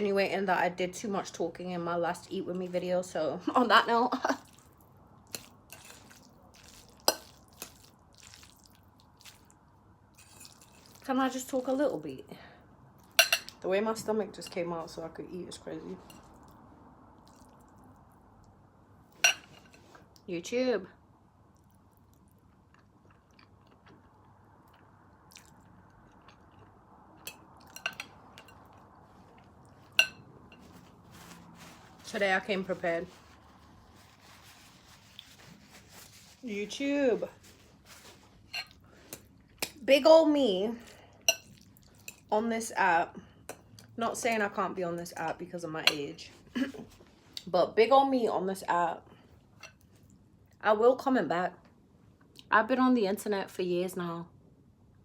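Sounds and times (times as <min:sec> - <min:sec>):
wet chewing: 0:04.4 - 0:11.0, 0:17.2 - 0:17.9, 0:21.5 - 0:30.0.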